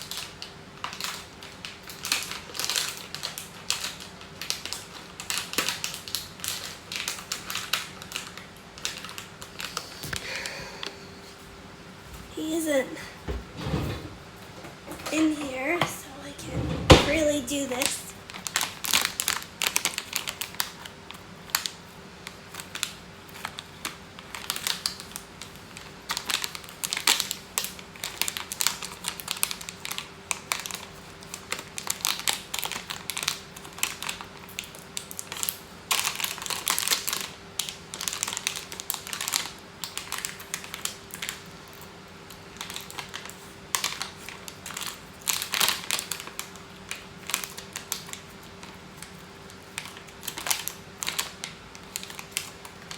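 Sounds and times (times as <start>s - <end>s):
packaging crinkling and clicking: 0.0s - 10.3s, 17.8s - 52.9s
faint steady hum: 6.2s - 26.2s.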